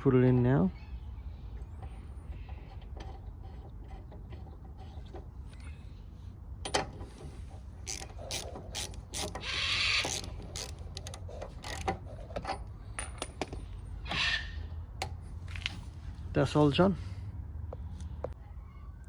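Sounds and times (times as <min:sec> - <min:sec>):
ratchet rasp: 0:01.8 - 0:05.2, 0:07.8 - 0:12.6
ratchet wrench clicking: 0:07.8 - 0:12.0.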